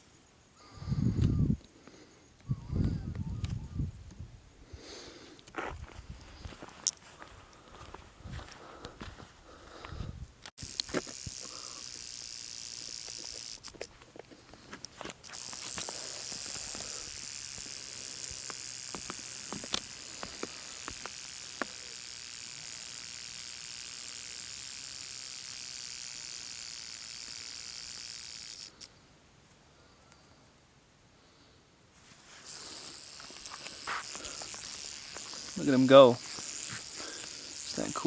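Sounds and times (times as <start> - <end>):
rattlesnake rattling: 10.5 - 29.0, 32.3 - 38.0.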